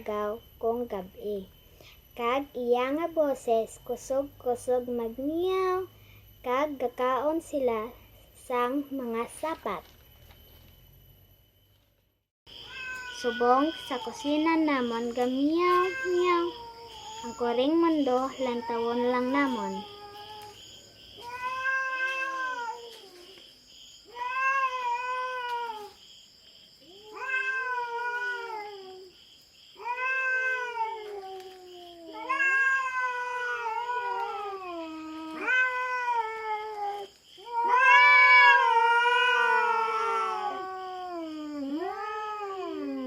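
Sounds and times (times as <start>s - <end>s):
cat yowling: 12.6s - 14.2s, 21.2s - 23.2s, 24.1s - 25.9s, 26.9s - 29.1s, 29.8s - 43.0s.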